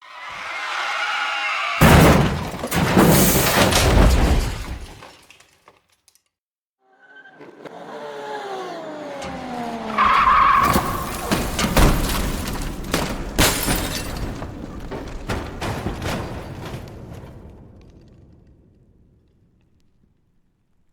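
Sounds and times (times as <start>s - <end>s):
tyre screech: 0.0s - 3.2s, 6.9s - 11.8s
debris clattering: 0.0s - 6.3s, 9.3s - 18.6s
heavy car crash impact: 0.1s - 5.5s, 9.2s - 18.1s
glass shattering: 0.2s - 6.2s, 10.2s - 16.8s
tyre skidding: 9.2s - 17.3s.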